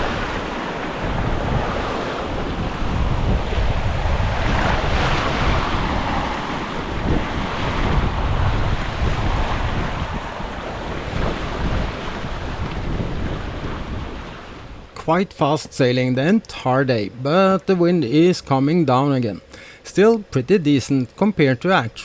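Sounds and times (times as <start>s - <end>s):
wind noise on microphone: 0.0s - 15.6s
water rushing past hull: 0.0s - 17.0s.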